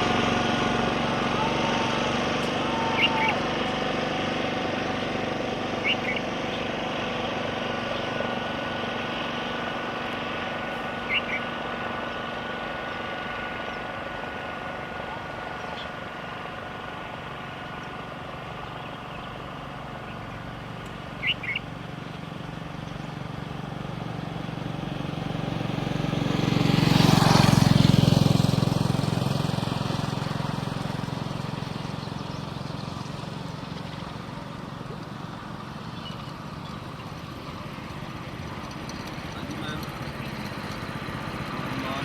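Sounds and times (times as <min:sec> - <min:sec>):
motor vehicle passing: 0:00.0 - 0:42.0
bird chirping: 0:01.4 - 0:03.8, 0:05.7 - 0:06.8, 0:10.7 - 0:12.3, 0:17.0 - 0:23.3, 0:35.7 - 0:37.3.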